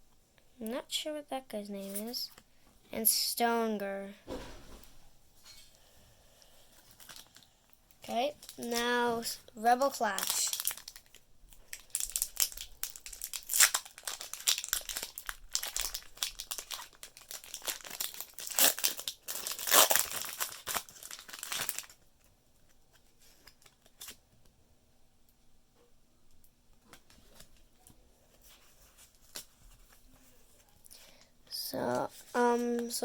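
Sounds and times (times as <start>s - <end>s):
foil wrapper crinkling and tearing: 6.8s - 7.6s, 9.7s - 22.1s, 23.3s - 24.2s.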